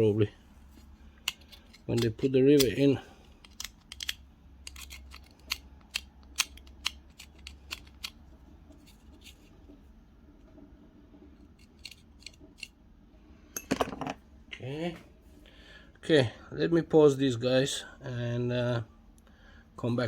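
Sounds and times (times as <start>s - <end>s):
clicks of small tools and parts: 0.8s - 8.2s, 11.5s - 12.7s.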